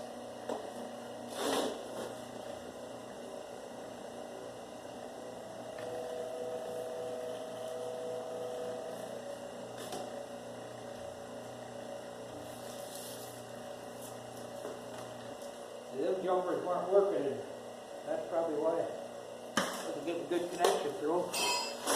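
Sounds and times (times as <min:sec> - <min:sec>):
machine motor humming: 0:02.1 - 0:20.3.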